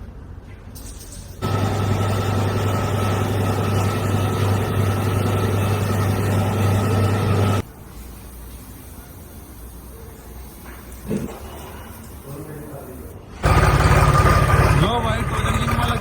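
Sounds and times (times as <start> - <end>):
tractor diesel engine idling: 1.4 - 7.6, 13.4 - 16.0.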